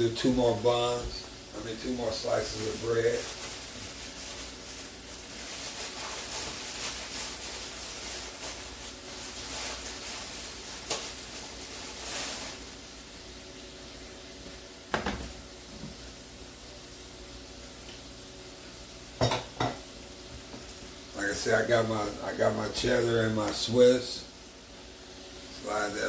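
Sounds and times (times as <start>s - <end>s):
butter sizzling in a skillet: 0.1s - 26.0s
knock against a pan: 14.9s - 15.4s, 19.2s - 19.8s.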